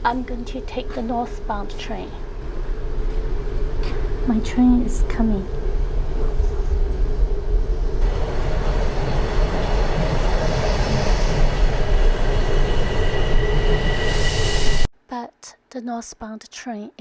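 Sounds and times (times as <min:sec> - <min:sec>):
subway train wheels rumbling: 0:00.0 - 0:14.9
high-pitched wheel squeal: 0:10.6 - 0:14.9.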